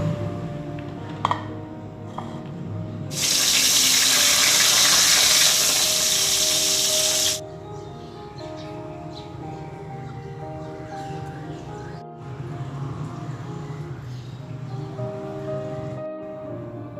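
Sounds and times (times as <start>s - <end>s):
tap water running into sink: 3.1s - 7.4s.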